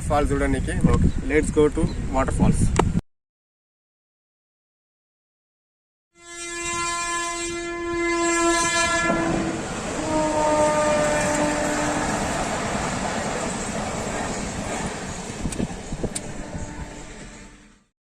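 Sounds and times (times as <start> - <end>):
loud horn blasts: 6.2 - 12.4, 16.0 - 17.8.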